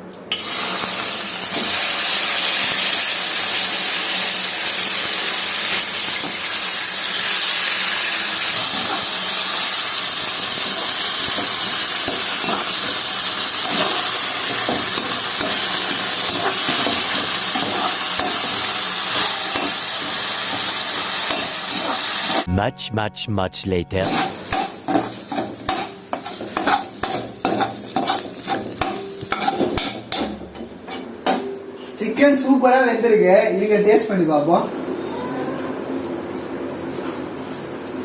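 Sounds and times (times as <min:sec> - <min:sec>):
chicken sizzling in hot oil: 0:00.4 - 0:22.5, 0:25.1 - 0:30.1.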